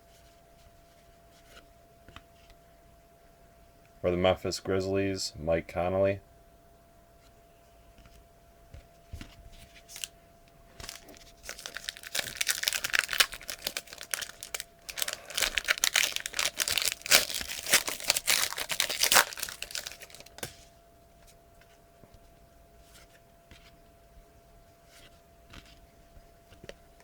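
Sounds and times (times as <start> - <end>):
wrapper tearing and crinkling: 9.9 - 10.1, 10.8 - 20.5.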